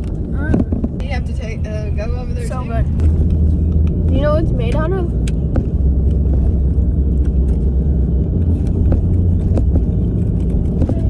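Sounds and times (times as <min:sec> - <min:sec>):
car cabin rumble: 0:00.0 - 0:11.0.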